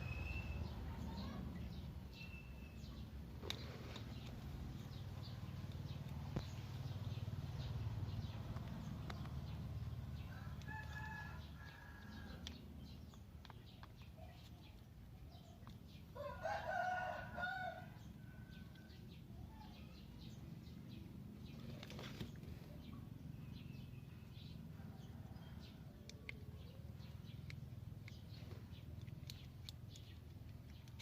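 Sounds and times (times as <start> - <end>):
rooster crowing: 16.2 - 17.9.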